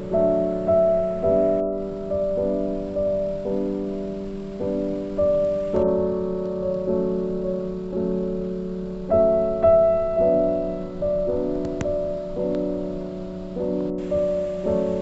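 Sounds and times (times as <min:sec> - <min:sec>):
soft piano chords: 0:00.0 - 0:15.0.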